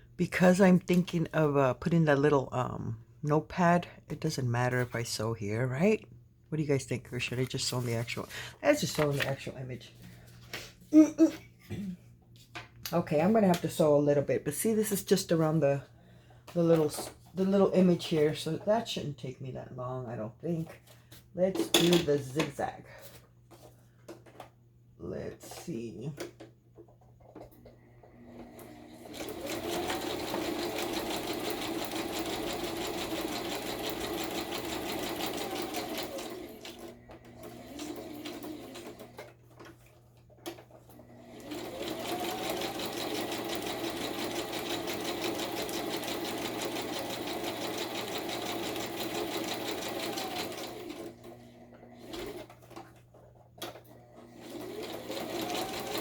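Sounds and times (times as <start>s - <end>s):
sewing machine stitching: 27.4s - 39.6s, 40.4s - 53.0s, 53.6s - 56.0s.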